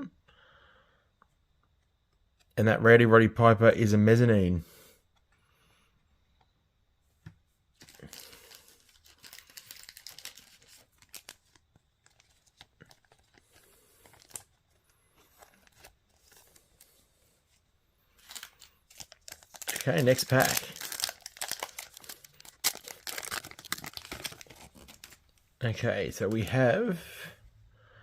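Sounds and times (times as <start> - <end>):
foil wrappers crinkling and tearing: 7.8 - 17.0, 18.2 - 25.4.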